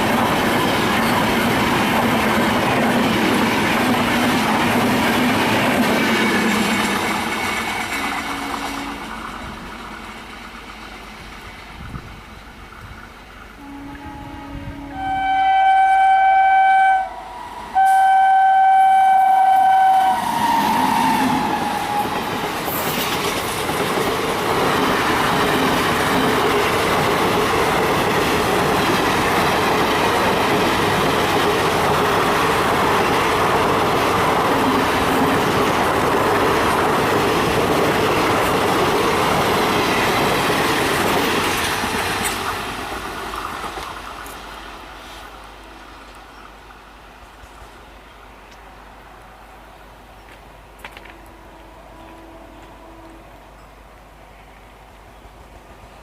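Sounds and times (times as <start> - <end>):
train passing at speed: 0.0 - 56.0
locomotive horn blasts: 8.1 - 9.2, 13.6 - 22.2, 51.1 - 53.5.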